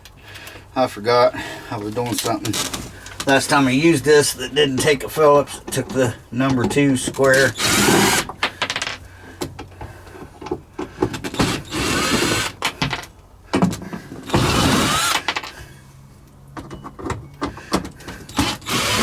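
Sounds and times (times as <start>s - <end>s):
cordless drill whine: 7.4s - 8.3s, 11.3s - 12.6s, 14.2s - 15.3s, 18.3s - 19.0s.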